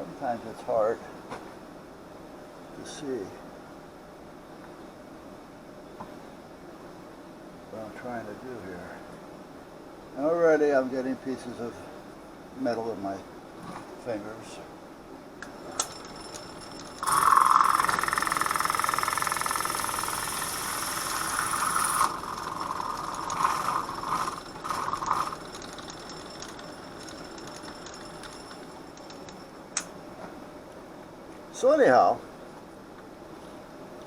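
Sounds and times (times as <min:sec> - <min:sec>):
electric drill boring metal: 0:15.7 - 0:29.2.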